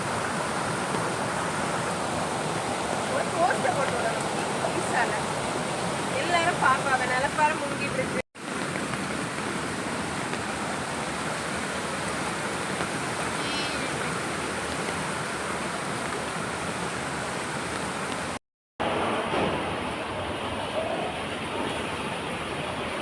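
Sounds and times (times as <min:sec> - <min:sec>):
floodwater rushing: 0:00.0 - 0:23.0.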